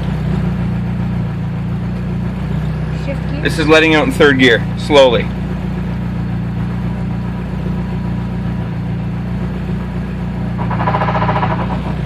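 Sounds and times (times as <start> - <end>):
car engine idling: 0.0 - 12.0
buzzing rattle: 10.2 - 12.0.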